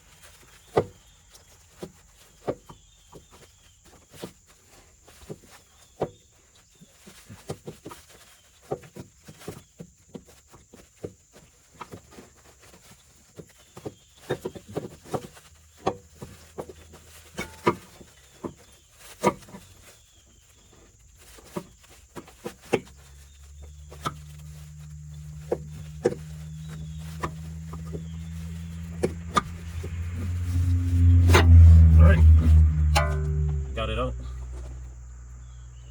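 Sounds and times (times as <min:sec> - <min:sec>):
low steady hum: 0:23.6 - 0:35.9.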